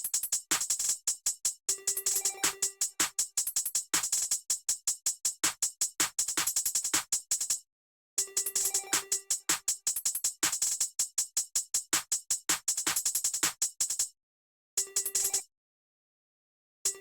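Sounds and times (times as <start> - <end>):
electronic drum beat: 0.0 - 7.6, 8.2 - 14.1, 15.0 - 15.4.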